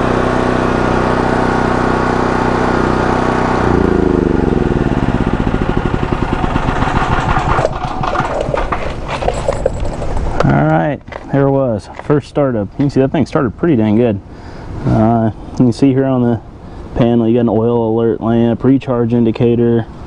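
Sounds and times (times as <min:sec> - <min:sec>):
generator engine running and stopping: 0:00.0 - 0:11.2.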